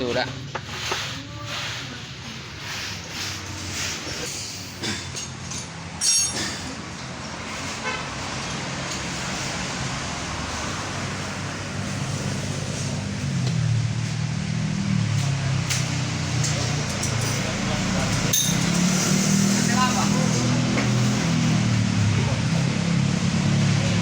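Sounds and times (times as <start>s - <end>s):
metallic clink: 5.1s - 6.7s, 16.4s - 19.2s.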